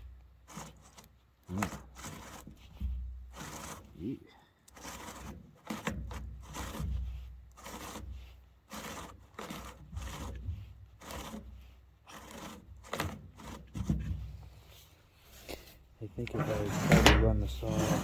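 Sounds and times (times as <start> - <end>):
saw chain scraping on bar: 0.5 - 2.7, 3.3 - 4.1, 4.7 - 14.0, 16.2 - 18.0.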